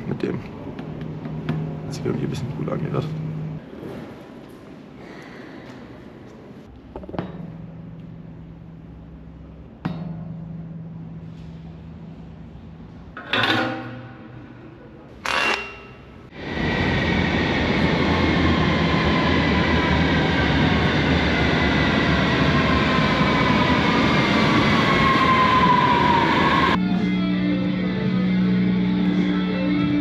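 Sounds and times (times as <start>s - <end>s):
city train passing: 0.0s - 6.8s, 16.1s - 30.0s
guitar music with low notes: 26.8s - 30.0s.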